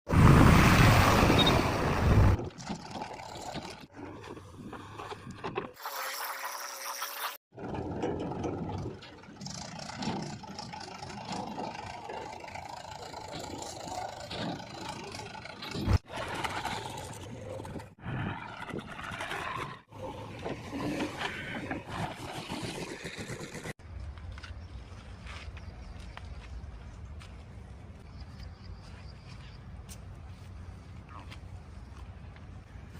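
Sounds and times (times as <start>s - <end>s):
diesel engine under load: 7.6s - 18.0s
bucket scraping mud: 15.8s - 23.7s.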